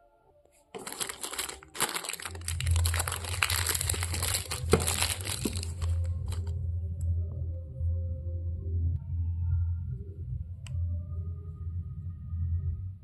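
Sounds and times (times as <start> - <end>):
plastic wrapping crinkling: 0.7 - 6.5.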